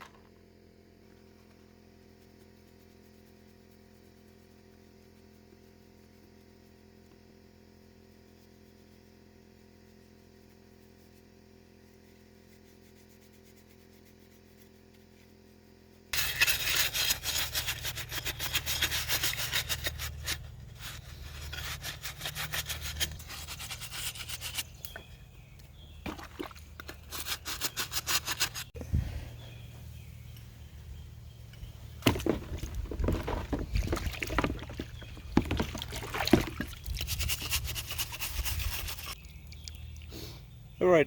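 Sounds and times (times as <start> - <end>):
stiff brush scrubbing: 16.1 - 28.8, 32.0 - 39.4.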